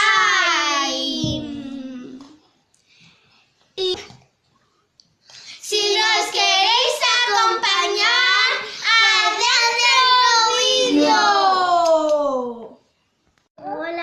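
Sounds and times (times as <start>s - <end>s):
girl singing: 0.0s - 2.2s, 5.7s - 11.5s.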